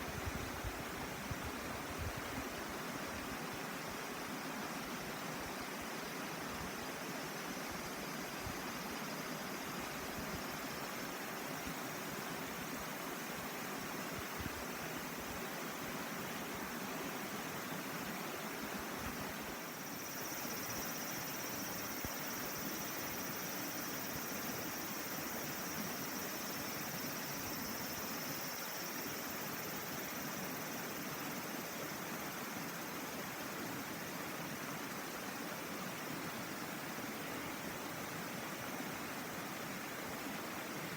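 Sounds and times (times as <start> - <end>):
faint high steady tone: 17.2 - 38.0.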